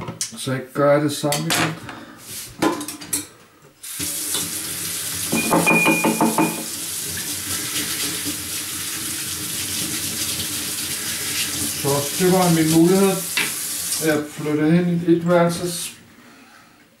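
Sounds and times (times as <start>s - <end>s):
tap water running into sink: 3.8s - 14.2s.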